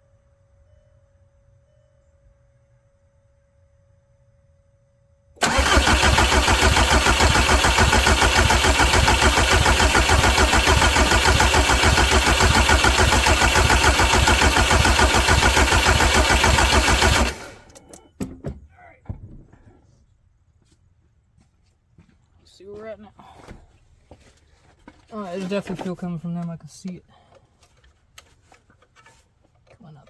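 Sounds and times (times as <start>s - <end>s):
diesel engine cranking on starter: 5.4s - 18.0s.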